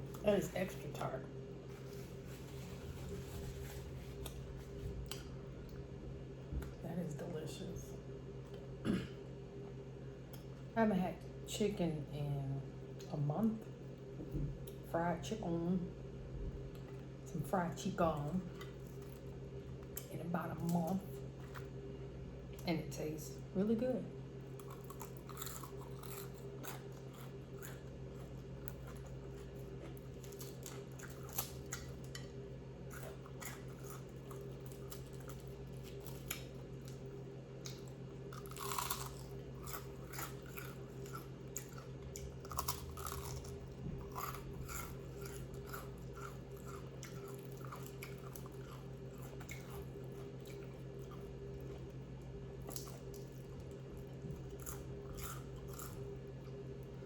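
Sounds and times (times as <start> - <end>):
steady low hum: 0.0 - 57.0
chewing crispy fried chicken: 18.2 - 22.7, 24.3 - 57.0.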